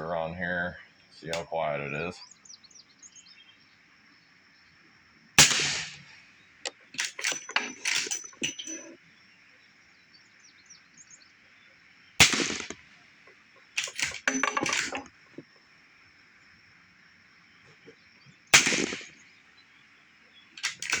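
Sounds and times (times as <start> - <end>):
suppressed rifle shots: 5.4 - 8.8, 12.2 - 12.9, 13.8 - 15.4, 18.5 - 19.2, 20.6 - 21.0
rifle lever metallic clicks: 6.6 - 9.0, 13.8 - 15.1, 20.6 - 21.0.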